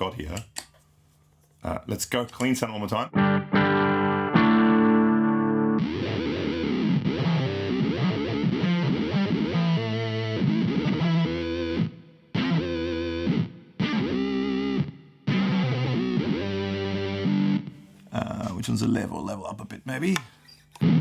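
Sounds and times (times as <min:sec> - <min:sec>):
pitch-shifted electric guitar: 0:03.1 - 0:18.5, 0:20.8 - 0:21.0.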